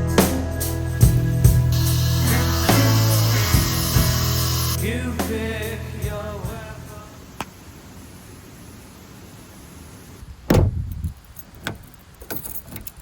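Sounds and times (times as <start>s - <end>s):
steady hiss: 1.6s - 12.8s
loud dull thump with ring: 10.5s - 11.0s.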